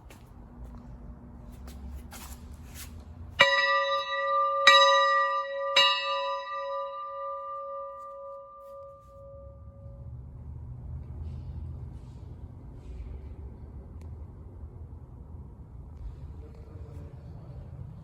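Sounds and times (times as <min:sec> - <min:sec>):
bell ringing with long hum: 0:03.4 - 0:11.4.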